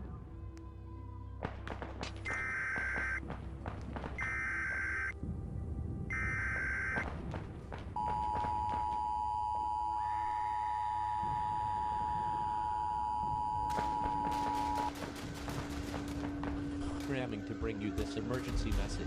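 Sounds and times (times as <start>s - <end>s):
low hum: 2.1s - 19.0s
sharp cracks: 13.7s - 17.3s.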